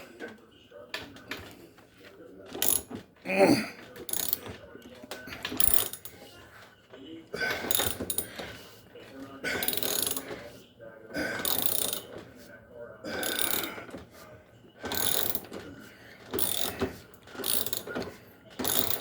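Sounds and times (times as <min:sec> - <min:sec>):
wrench ratcheting: 0:02.6 - 0:02.9, 0:04.1 - 0:04.5, 0:05.6 - 0:06.1, 0:07.7 - 0:08.3, 0:09.6 - 0:10.2, 0:11.4 - 0:12.1, 0:13.2 - 0:13.8, 0:14.9 - 0:15.5, 0:16.4 - 0:18.0, 0:18.6 - 0:19.0.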